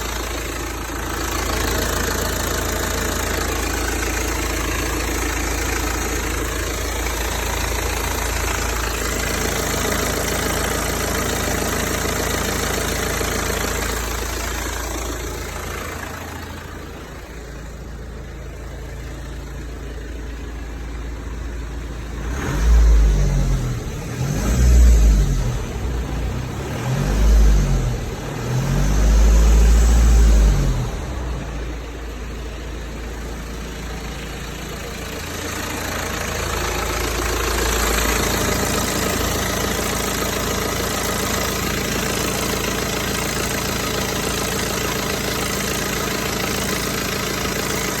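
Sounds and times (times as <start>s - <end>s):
diesel engine idling: 0.0s - 48.0s
engine revving: 22.0s - 32.2s, 33.7s - 48.0s.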